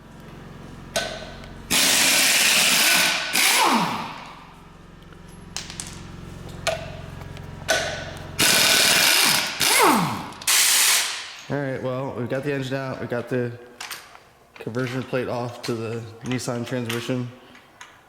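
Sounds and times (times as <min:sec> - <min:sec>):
power tool whining: 0:01.6 - 0:04.6, 0:08.2 - 0:11.2
low hum: 0:03.8 - 0:08.6.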